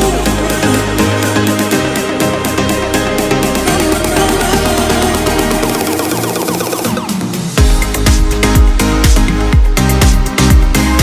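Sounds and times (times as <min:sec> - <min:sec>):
heavy kick drum beat: 0:03.8 - 0:10.7
falling synth notes: 0:03.9 - 0:07.6.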